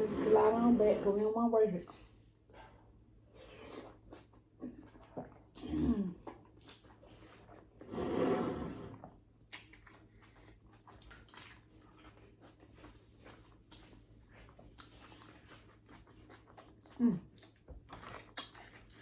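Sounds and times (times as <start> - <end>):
chewing crab: 9.4 - 19.0.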